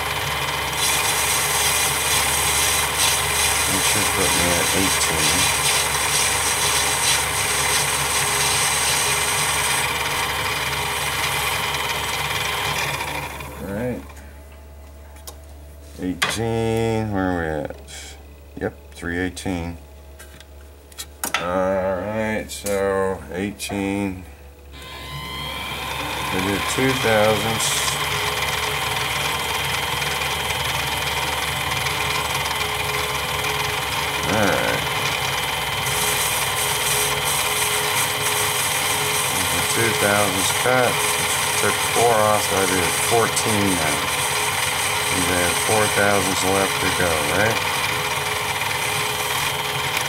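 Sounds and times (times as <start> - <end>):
lathe motor hum: 0.0 - 14.2, 23.9 - 50.0
high cutting hiss: 0.8 - 9.8.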